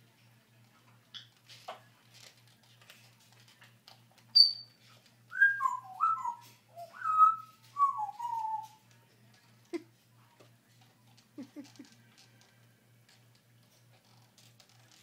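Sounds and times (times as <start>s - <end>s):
parrot whistling: 4.3s - 4.7s, 5.3s - 8.8s.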